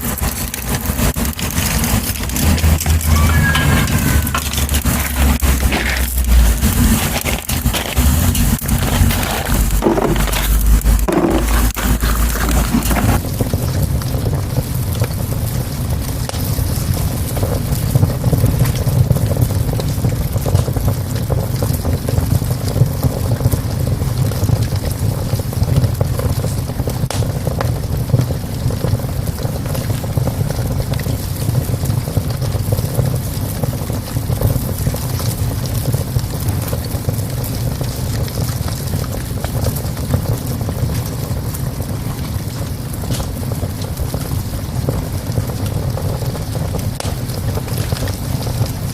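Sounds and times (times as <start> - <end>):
fire crackles: 0.0 - 48.9
wood fire rumbling: 0.0 - 48.9.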